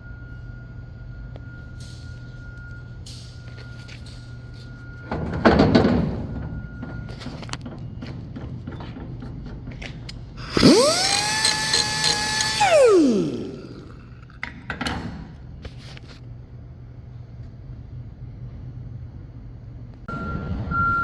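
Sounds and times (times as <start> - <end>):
power tool motor whine: 10.4 - 14.3.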